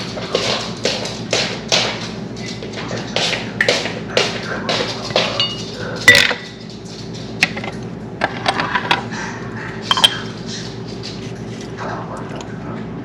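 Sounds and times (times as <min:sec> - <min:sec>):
cups and cutlery clinking: 0:05.1 - 0:06.5, 0:09.9 - 0:10.2.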